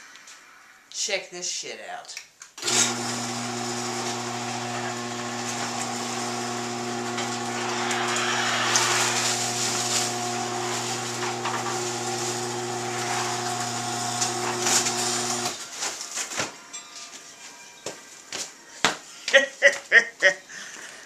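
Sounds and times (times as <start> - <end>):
garage door opener motor: 2.6 - 15.6.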